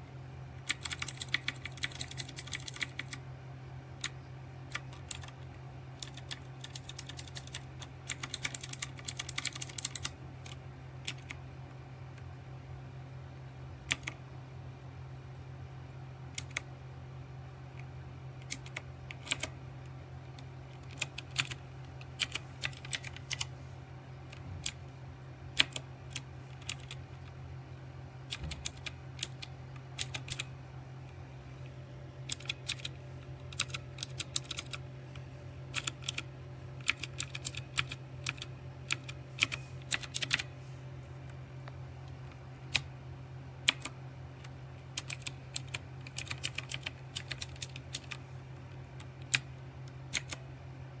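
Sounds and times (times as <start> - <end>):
low steady hum: 0.0 - 51.0
mechanical keyboard key clacks: 0.6 - 3.2, 6.0 - 11.4, 28.3 - 30.5, 32.3 - 34.8, 35.7 - 36.2, 36.8 - 40.5, 45.0 - 48.2, 50.1 - 50.4.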